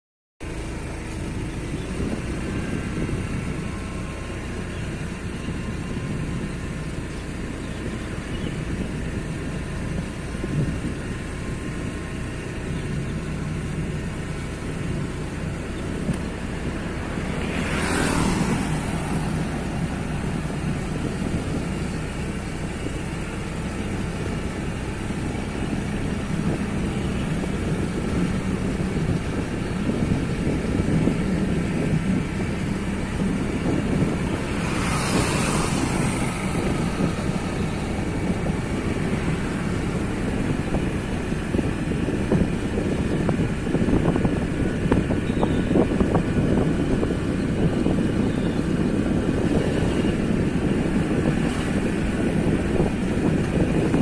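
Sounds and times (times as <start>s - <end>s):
road traffic hum: 0.4s - 54.0s
vehicle passing close: 16.0s - 22.6s, 32.6s - 42.4s.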